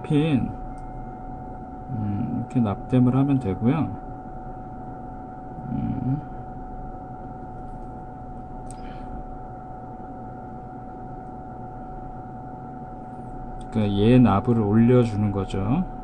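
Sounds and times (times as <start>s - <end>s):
constant high tone: 0.0s - 16.0s
electrical hum: 0.0s - 16.0s.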